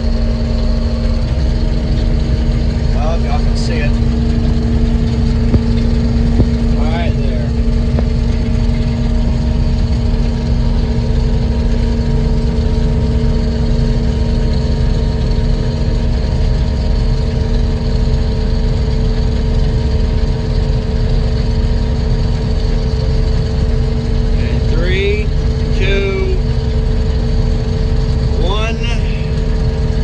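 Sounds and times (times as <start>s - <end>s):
machinery whining tones: 0.0s - 16.2s, 22.8s - 30.0s
heavy machinery engine rumble: 0.0s - 30.0s.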